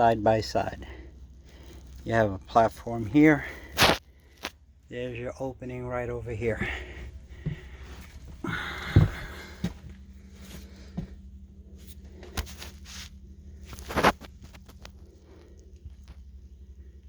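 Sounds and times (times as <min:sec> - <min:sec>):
faint low hum: 0:00.0 - 0:17.0
heavy thump: 0:08.8 - 0:09.9.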